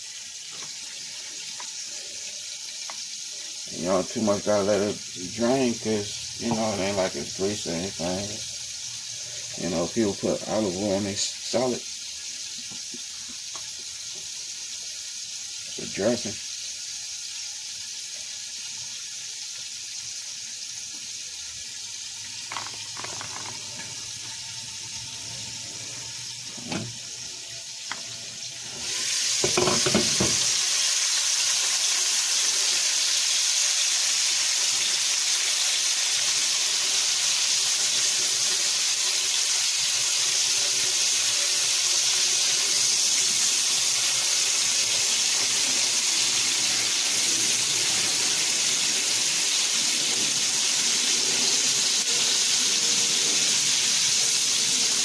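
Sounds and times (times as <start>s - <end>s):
liver sizzling in oil: 0.0s - 55.0s
utensils clicking on pan: 22.4s - 24.0s, 28.8s - 30.6s
knock on pan: 29.4s - 30.6s.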